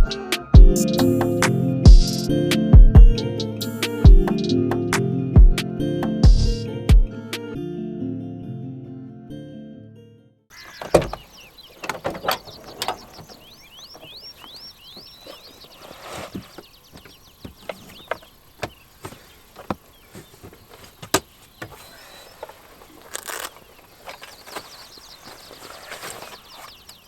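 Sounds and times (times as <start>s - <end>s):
bird chirping: 10.5s - 27.0s.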